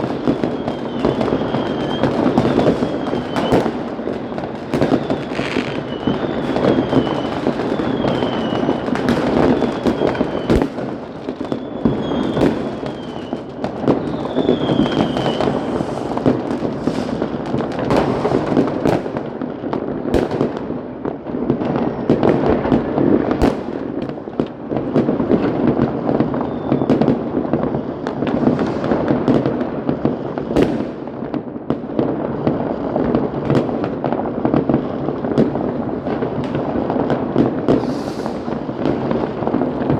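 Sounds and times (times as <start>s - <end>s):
whistling rockets: 0.0s - 19.3s, 24.9s - 31.1s, 34.7s - 39.9s
firecrackers crackling: 0.0s - 39.9s
firework bangs: 0.0s - 39.9s.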